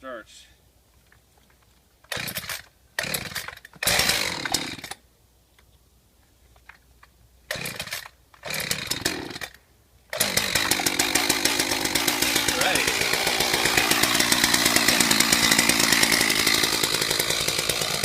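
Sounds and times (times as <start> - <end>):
chainsaw starter cord pulls: 2.0 - 5.0, 7.5 - 18.0
chainsaw engine sputtering: 2.1 - 5.0, 7.5 - 18.0.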